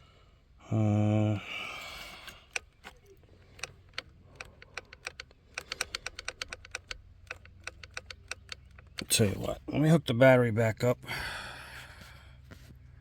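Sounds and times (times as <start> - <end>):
light clicks and rattles: 2.0 - 9.6.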